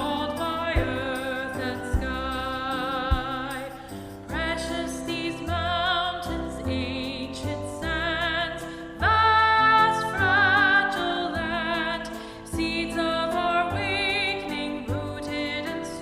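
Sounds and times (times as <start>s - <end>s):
slow music with held notes: 0.0s - 16.0s.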